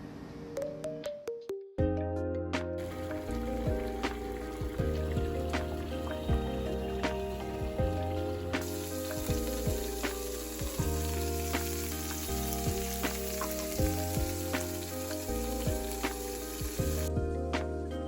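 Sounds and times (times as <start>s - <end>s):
background music: 0.4s - 18.0s
food sizzling in pan: 2.8s - 17.1s.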